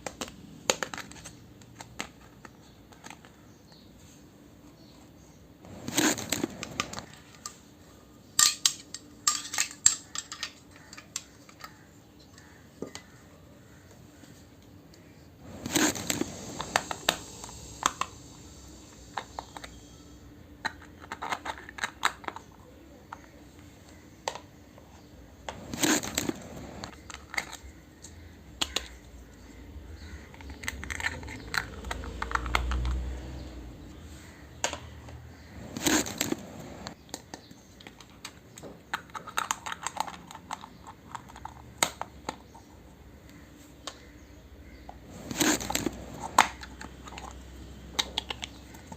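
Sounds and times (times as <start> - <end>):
small plastic pieces clicking: 30.3 - 33.1, 37.1 - 42.5.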